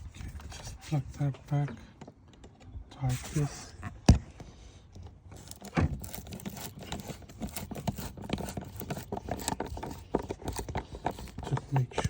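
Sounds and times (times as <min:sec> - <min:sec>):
plastic housing clicking and knocking: 0:05.4 - 0:12.0.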